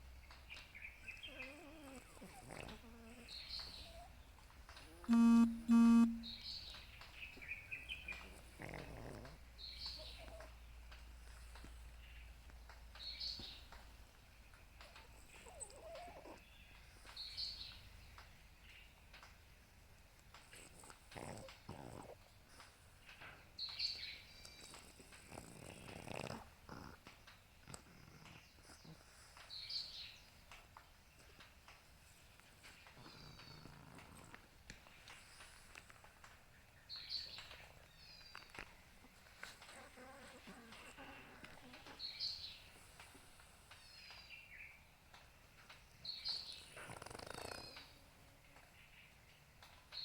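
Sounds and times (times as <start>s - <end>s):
dog snoring: 1.3s - 4.1s, 8.3s - 9.4s, 20.5s - 22.3s, 24.6s - 29.3s, 33.0s - 34.6s, 46.6s - 48.0s
high-pitched chirp: 5.1s - 6.4s
short buzzy beeps: 5.1s - 6.4s.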